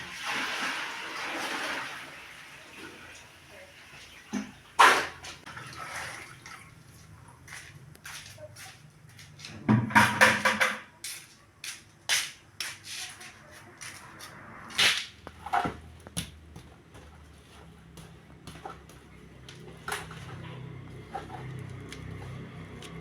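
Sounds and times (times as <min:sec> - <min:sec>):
sharp knocks and clatters: 0:09.6 - 0:11.0.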